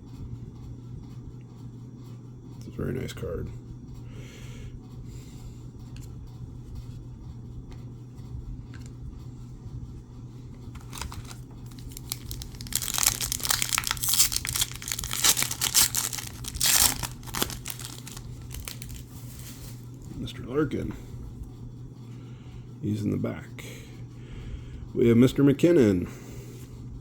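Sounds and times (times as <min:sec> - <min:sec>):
faint low hum: 0:00.0 - 0:27.0
foil wrapper crinkling and tearing: 0:10.8 - 0:20.0.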